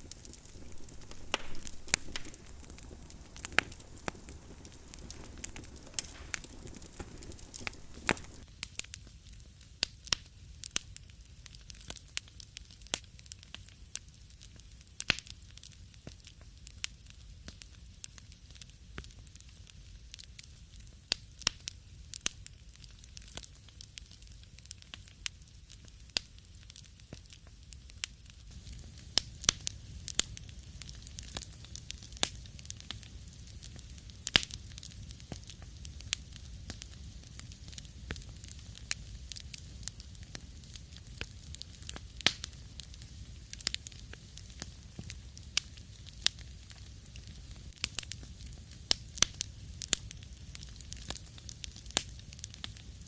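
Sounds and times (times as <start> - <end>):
fire pops and snaps: 0.0 - 53.0
wood fire crackling: 0.0 - 53.0.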